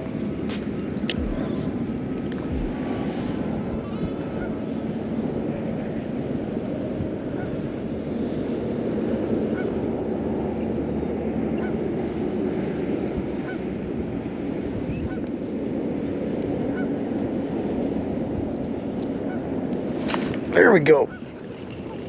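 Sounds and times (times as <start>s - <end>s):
wind on microphone: 0.0s - 22.0s.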